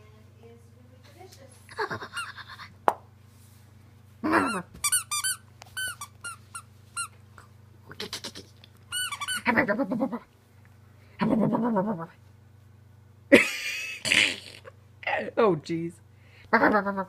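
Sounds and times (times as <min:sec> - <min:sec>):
squeaky dog toy squeaks: 0:04.4 - 0:07.1, 0:08.9 - 0:09.6.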